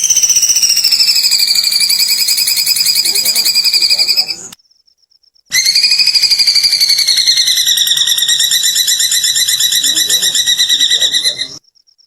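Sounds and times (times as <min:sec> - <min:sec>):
bird giggling trill: 0:00.0 - 0:04.5, 0:05.6 - 0:11.6.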